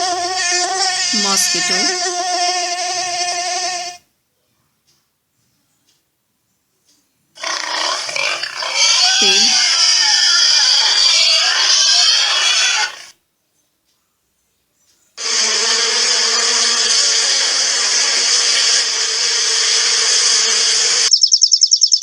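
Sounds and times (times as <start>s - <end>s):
pig grunting and squealing: 0.0s - 4.0s, 7.4s - 13.1s
steady buzz with low hum: 0.0s - 4.0s, 15.2s - 21.1s.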